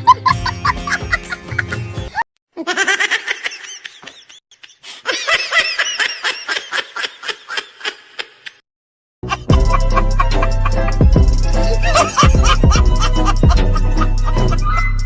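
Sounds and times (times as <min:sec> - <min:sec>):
high-pitched laughter: 0:00.0 - 0:08.6, 0:09.2 - 0:15.0.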